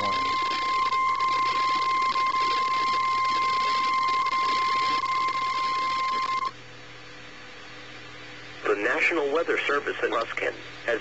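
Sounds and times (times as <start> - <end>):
high-pitched warning alarm tone: 0.0 - 6.5
constant hiss: 0.0 - 11.0.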